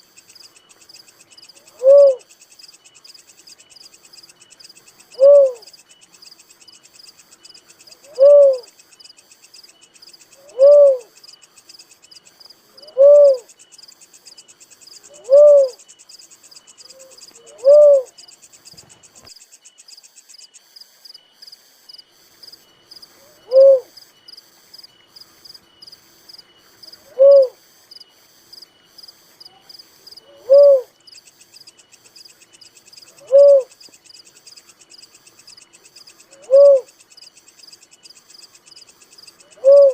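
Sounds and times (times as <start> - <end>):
insects chirring: 0.0 - 39.9
dove hooting: 1.6 - 2.3, 4.9 - 5.7, 7.9 - 8.8, 10.4 - 11.2, 12.7 - 13.6, 15.0 - 15.9, 16.8 - 18.3, 23.1 - 24.0, 26.9 - 27.6, 29.5 - 31.0, 33.0 - 33.8, 36.2 - 37.0, 39.3 - 39.9.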